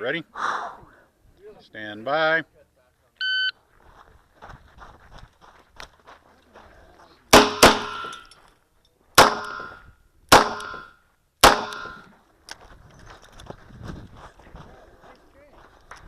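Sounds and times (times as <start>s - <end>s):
handgun shots: 7.3s - 8.3s, 9.2s - 12.0s.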